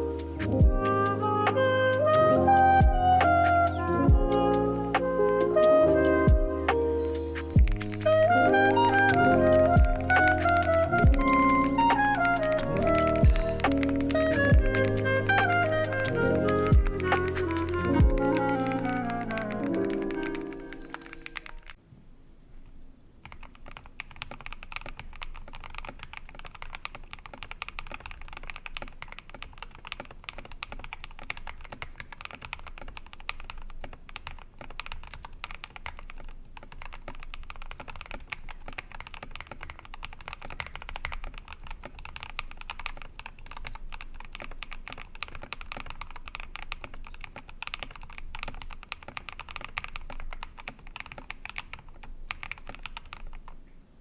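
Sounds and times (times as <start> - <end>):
fast typing on mechanical keyboard: 7.6 - 21.8, 23.2 - 53.6.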